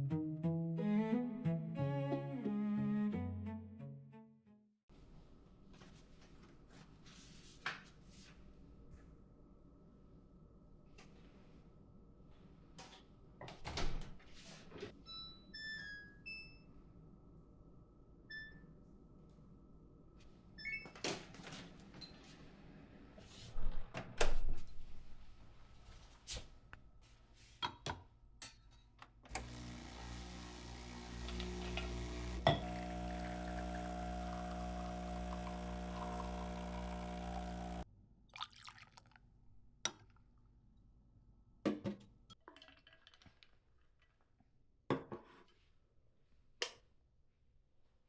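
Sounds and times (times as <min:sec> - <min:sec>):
steady machine hum: 0:29.4 - 0:37.8.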